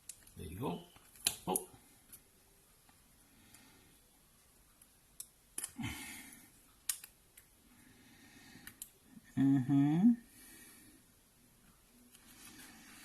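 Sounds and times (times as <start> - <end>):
small clicks and taps: 6.8 - 7.5.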